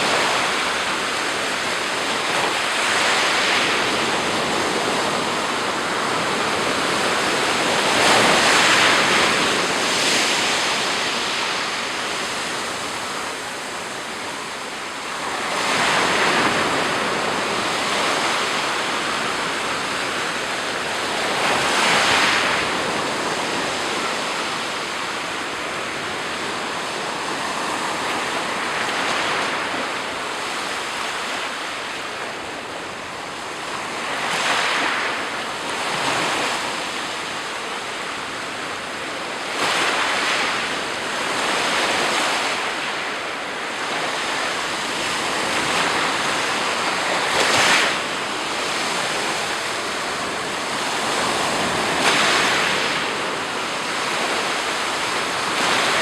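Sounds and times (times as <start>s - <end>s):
waves breaking on shore: 0.0s - 56.0s.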